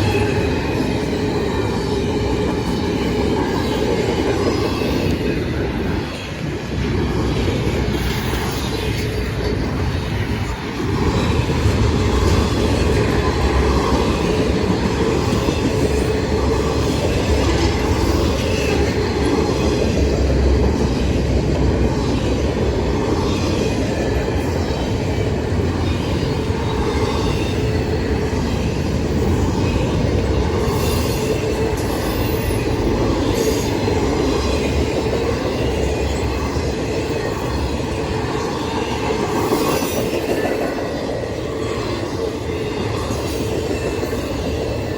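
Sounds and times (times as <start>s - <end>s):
train wheels rumbling on rails: 0.0s - 44.9s.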